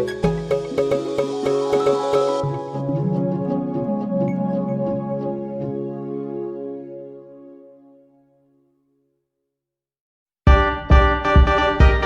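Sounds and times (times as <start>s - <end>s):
soft instrumental music: 0.0s - 8.4s.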